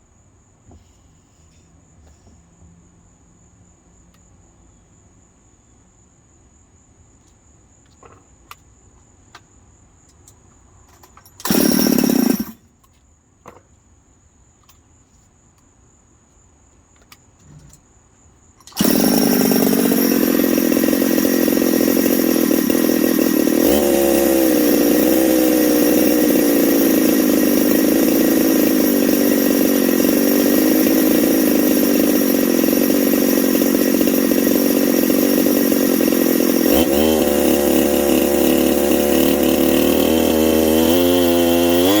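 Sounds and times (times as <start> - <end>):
chainsaw running: 11.4 - 12.6, 18.6 - 42.0.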